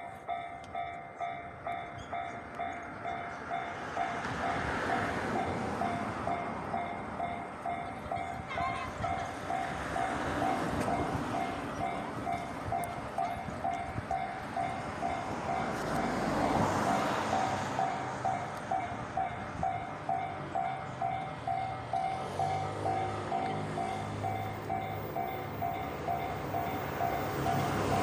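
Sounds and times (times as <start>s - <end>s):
train running past: 0.0s - 28.0s
level crossing alarm bell ringing: 17.0s - 28.0s.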